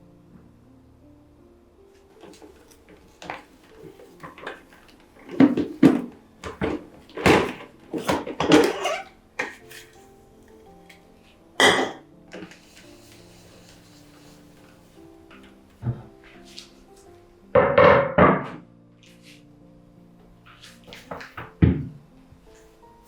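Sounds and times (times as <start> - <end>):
soft background music: 0.0 - 23.0
household things clattering: 2.2 - 10.1, 17.6 - 18.6, 20.5 - 22.0.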